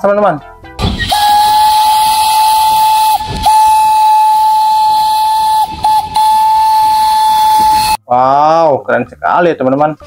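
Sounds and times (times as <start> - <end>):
steam hissing: 0.9 - 8.0
steam train whistle: 1.0 - 8.0.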